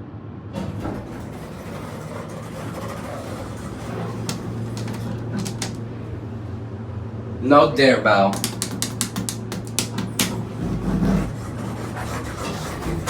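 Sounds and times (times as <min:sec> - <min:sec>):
elevator hum: 0:00.3 - 0:13.0
elevator cab rattle: 0:00.5 - 0:06.6, 0:07.5 - 0:11.6
sharp clicks: 0:08.3 - 0:10.4.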